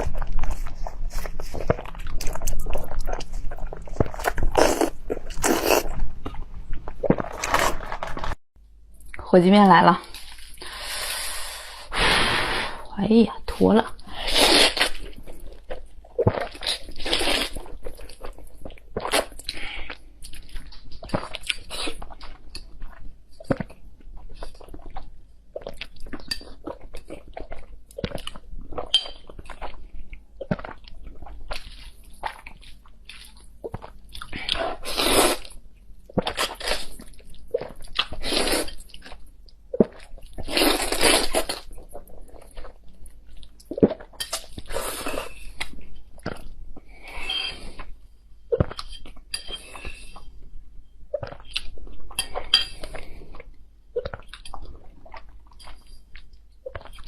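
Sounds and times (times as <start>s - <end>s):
wet chewing and smacking: 51.1s - 57.0s.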